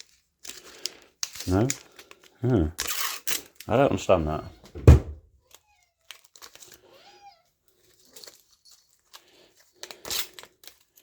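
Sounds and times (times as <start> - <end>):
rustling and crinkling: 0.0 - 11.0
cat meowing: 6.8 - 7.5.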